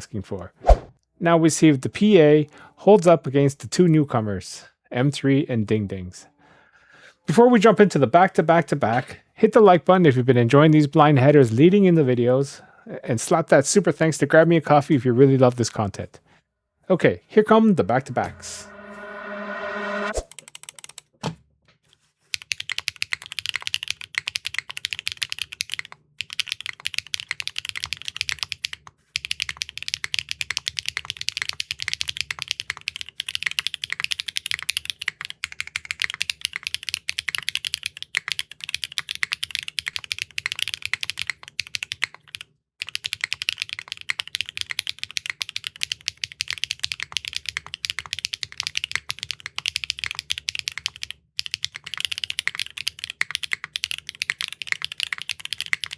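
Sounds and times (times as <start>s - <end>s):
fast mechanical keyboard typing: 20.3s - 21.1s, 22.3s - 55.9s.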